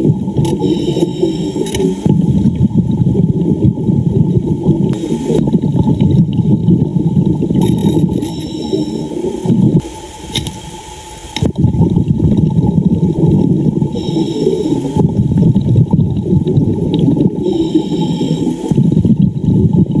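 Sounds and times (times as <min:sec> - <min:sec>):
muffled underwater bubbling: 0:00.0 - 0:20.0.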